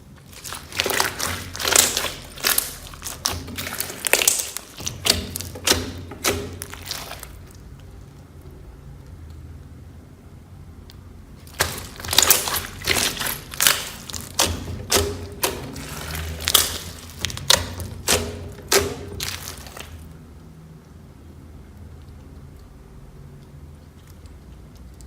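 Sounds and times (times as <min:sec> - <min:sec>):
slime squelching: 0:00.0 - 0:08.5, 0:11.2 - 0:20.4.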